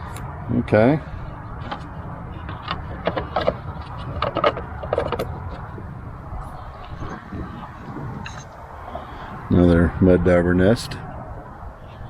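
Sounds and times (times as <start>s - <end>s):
car parts clicking and clunking: 1.3s - 8.7s.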